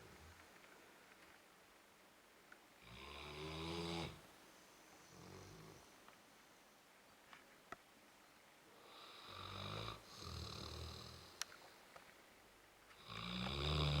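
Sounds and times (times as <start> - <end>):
dog snoring: 2.8 - 4.2, 8.8 - 11.3, 13.0 - 14.0.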